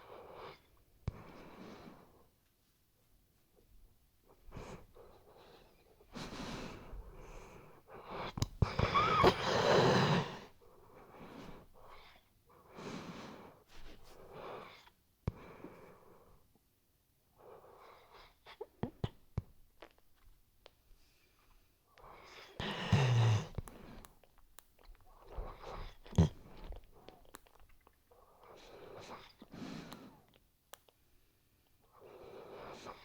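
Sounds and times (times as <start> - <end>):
dog snoring and wheezing: 22.2 - 23.6.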